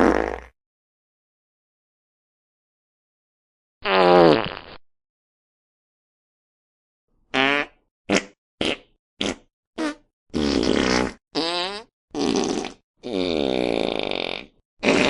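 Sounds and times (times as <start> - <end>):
fart sound effects: 0.0 - 0.5, 3.8 - 4.8, 7.4 - 15.0.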